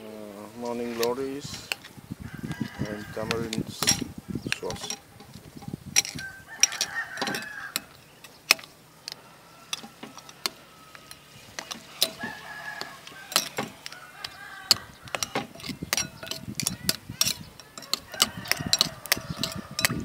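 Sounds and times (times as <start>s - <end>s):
rooster crowing: 2.2s - 3.7s, 6.1s - 8.0s, 8.9s - 15.8s, 16.7s - 20.0s
sharp clicks and knocks: 2.8s - 20.0s.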